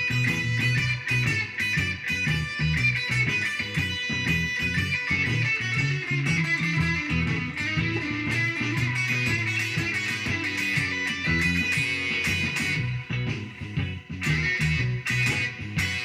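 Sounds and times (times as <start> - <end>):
blues guitar playing: 0.0 - 16.0
low bass line: 0.0 - 16.0.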